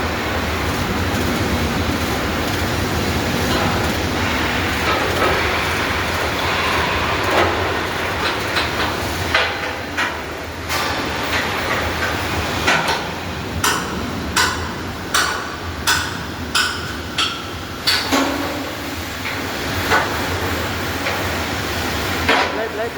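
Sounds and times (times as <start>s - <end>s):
industrial hum: 0.0s - 22.9s
hammer striking steel: 13.6s - 18.6s.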